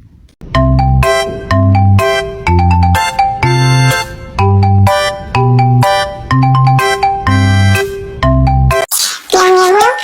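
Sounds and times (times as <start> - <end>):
bell-like melody over bass: 0.4 - 8.8.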